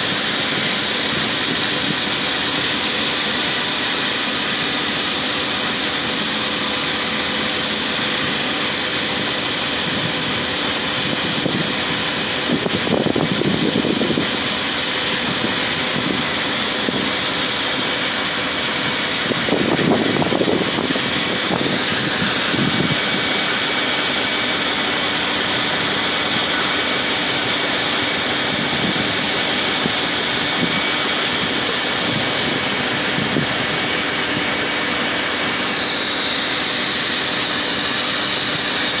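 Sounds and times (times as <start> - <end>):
harvest machinery engine and fan: 0.0 - 39.0.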